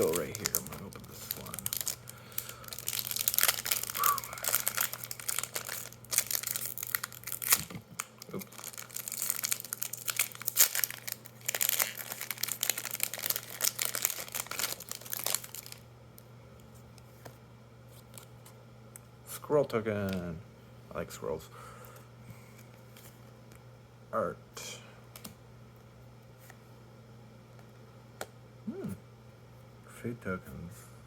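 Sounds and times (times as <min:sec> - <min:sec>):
foil wrapper tearing and crinkling: 0:00.0 - 0:15.8.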